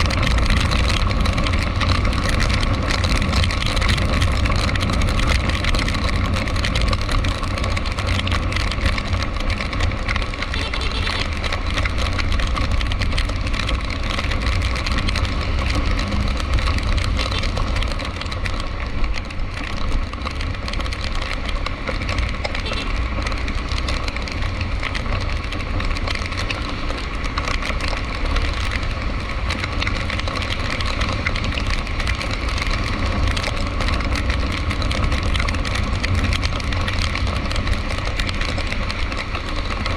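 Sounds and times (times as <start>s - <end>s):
car road noise: 0.0s - 39.9s
engine rumble: 0.0s - 39.9s.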